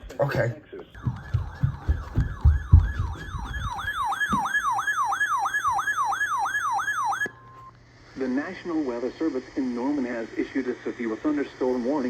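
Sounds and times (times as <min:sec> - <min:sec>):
dull low thumps: 0:01.0 - 0:04.5
electronic yelp siren tone: 0:01.0 - 0:07.7.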